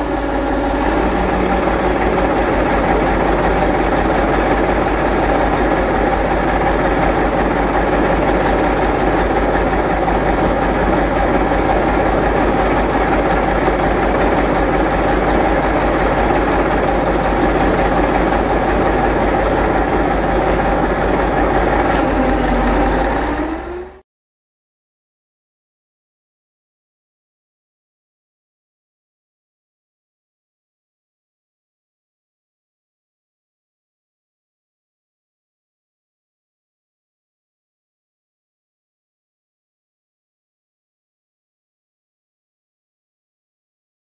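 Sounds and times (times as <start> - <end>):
heavy truck engine running: 0.0 - 24.0.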